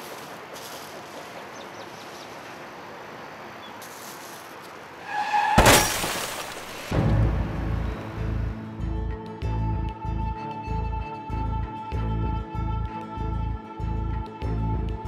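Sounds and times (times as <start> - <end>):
traffic noise: 0.0 - 8.7
car tyres screeching: 3.8 - 7.0
low pulsing dramatic music: 6.9 - 15.0.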